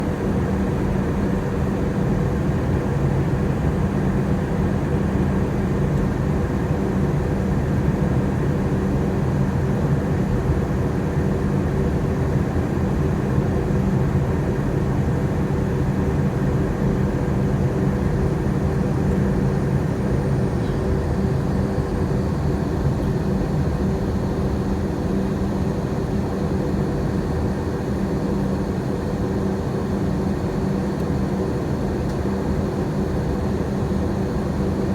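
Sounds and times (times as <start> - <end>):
airplane cabin drone: 16.4 - 34.9.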